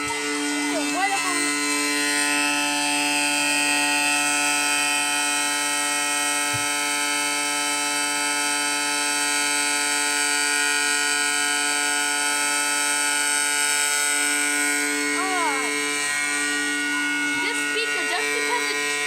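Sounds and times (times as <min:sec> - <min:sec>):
steady electronic siren tone: 0:00.0 - 0:19.0.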